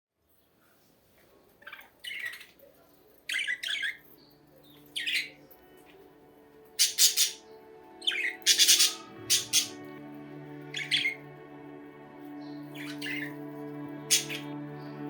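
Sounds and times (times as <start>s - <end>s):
background music: 3.7s - 15.0s
budgerigars squawking: 5.0s - 5.4s, 6.8s - 7.4s, 8.0s - 9.8s, 12.7s - 13.4s, 14.1s - 14.5s.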